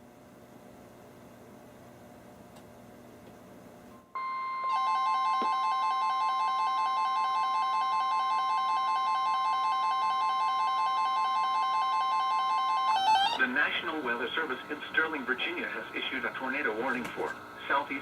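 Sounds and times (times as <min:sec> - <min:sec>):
steady high alarm tone: 0:04.2 - 0:13.4
two-tone warbling alert beeps: 0:04.2 - 0:13.4.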